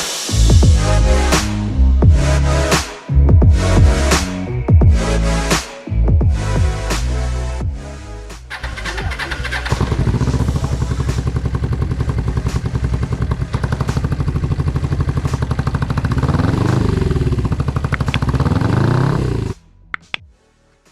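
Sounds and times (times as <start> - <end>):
motorcycle engine revving: 8.5 - 19.6.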